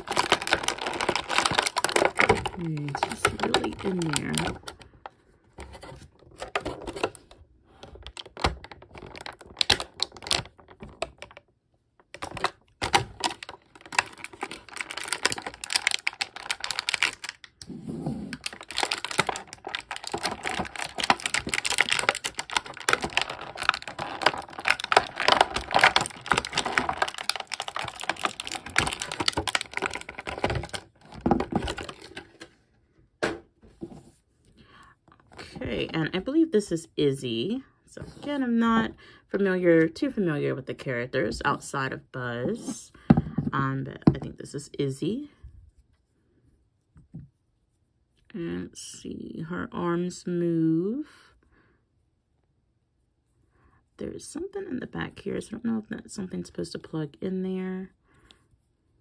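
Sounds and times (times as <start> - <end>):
stiff plastic crackling and clicking: 0.0 - 5.2, 6.3 - 17.7, 18.3 - 32.5.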